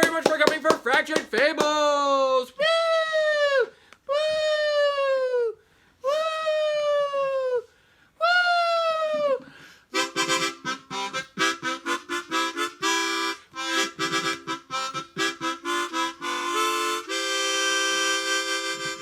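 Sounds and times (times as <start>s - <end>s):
lively tune on reed instrument: 10.0s - 19.0s.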